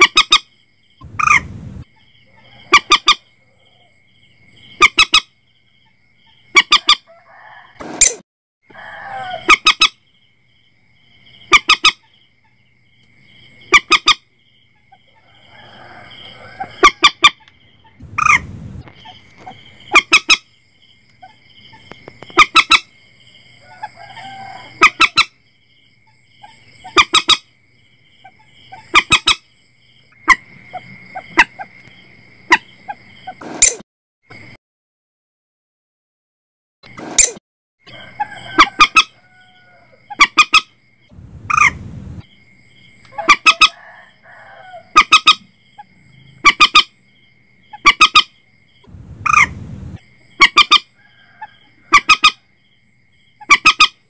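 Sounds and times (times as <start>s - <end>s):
moorhen calls: 0.0s - 1.6s, 2.3s - 3.9s, 11.4s - 12.1s, 13.6s - 14.2s, 14.8s - 20.5s, 26.4s - 27.4s, 40.1s - 40.8s, 41.5s - 41.8s, 43.1s - 43.9s, 47.7s - 48.3s, 49.2s - 49.6s, 50.4s - 50.9s, 51.9s - 52.4s.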